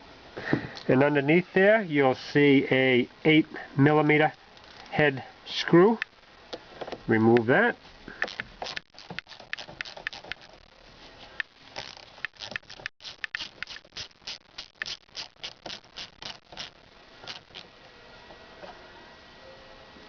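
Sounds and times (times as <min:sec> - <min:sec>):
ratchet clicking: 0:08.2 - 0:10.6, 0:11.4 - 0:17.6.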